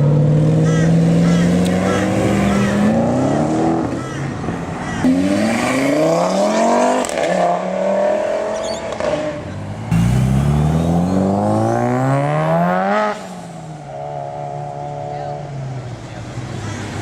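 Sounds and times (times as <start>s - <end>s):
loud car engine climbing in pitch: 0.0s - 16.5s
car engine revving and shifting gear: 5.0s - 15.2s.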